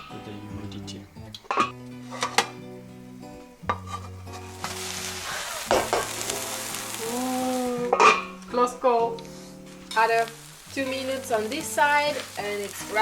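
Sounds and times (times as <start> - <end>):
background music: 0.0 - 13.0
pan and lid clanking: 1.4 - 2.6, 3.6 - 4.9, 5.7 - 6.6, 7.9 - 8.4
food sizzling in a frying pan: 3.7 - 13.0.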